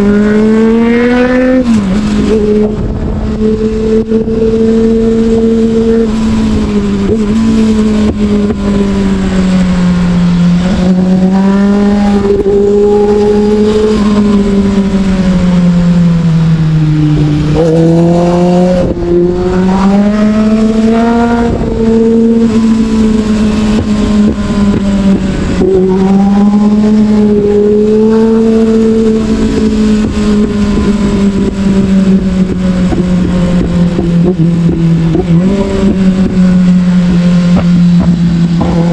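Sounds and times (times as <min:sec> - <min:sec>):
motorcycle engine revving: 0:00.0 - 0:38.9
wind rushing over microphone: 0:00.0 - 0:38.9.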